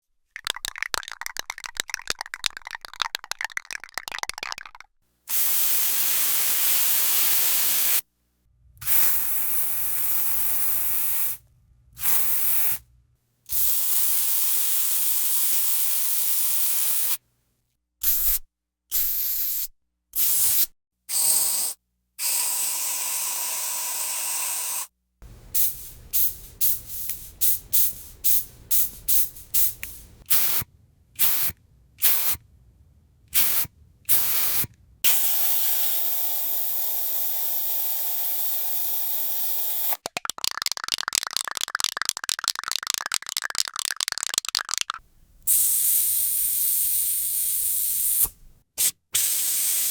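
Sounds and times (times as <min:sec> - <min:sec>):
spray can rattling: 0:00.4 - 0:04.9, 0:25.5 - 0:30.1, 0:39.9 - 0:46.0
aerosol spray hissing: 0:24.6 - 0:30.2, 0:45.5 - 0:49.9.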